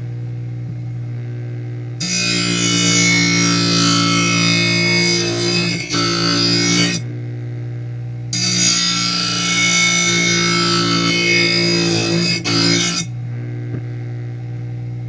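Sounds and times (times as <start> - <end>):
blade grinding with loud hiss: 2.0 - 7.1, 8.4 - 13.1
grinding wheel humming: 2.0 - 7.1, 8.4 - 13.2.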